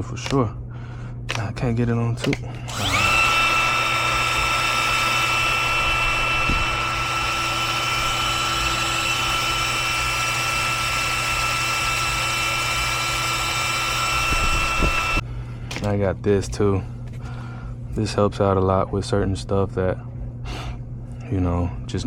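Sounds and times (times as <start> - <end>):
power drill whining: 2.6 - 15.2.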